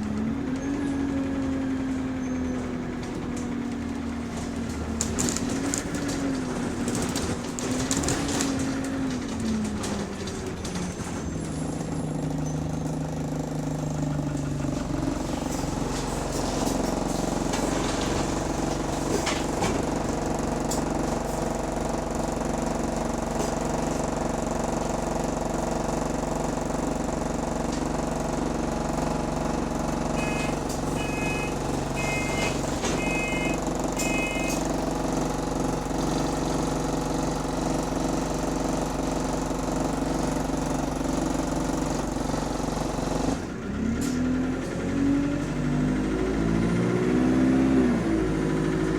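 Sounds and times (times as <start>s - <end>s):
bus diesel engine running: 0.0s - 48.9s
door buzzer beeps: 30.2s - 34.8s.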